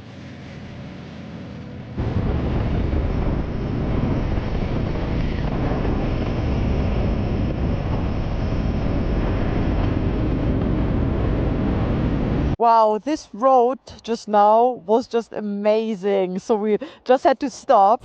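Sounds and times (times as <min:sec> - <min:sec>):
wind buffeting microphone: 0:01.8 - 0:12.6.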